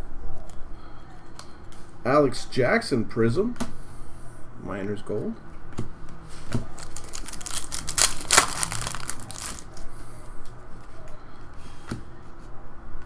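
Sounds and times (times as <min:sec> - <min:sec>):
foil wrapper crinkling: 0:06.7 - 0:09.8
cards clicking: 0:06.8 - 0:09.6.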